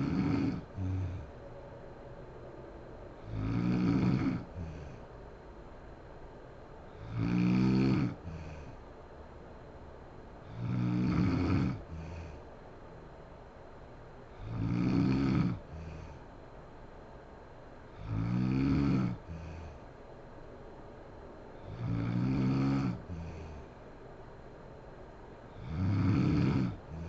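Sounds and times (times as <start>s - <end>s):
woman snoring: 0.0s - 1.3s, 3.2s - 5.0s, 6.9s - 8.8s, 10.4s - 12.4s, 14.3s - 16.2s, 18.0s - 19.9s, 21.6s - 23.7s, 25.5s - 27.0s
soft breath out: 19.2s - 20.0s.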